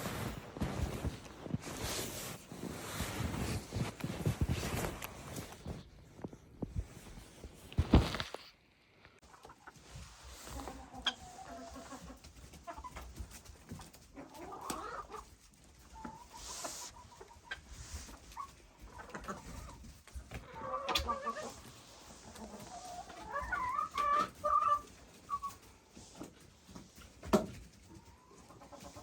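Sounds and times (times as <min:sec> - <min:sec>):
chickens clucking: 0:09.2 - 0:29.0.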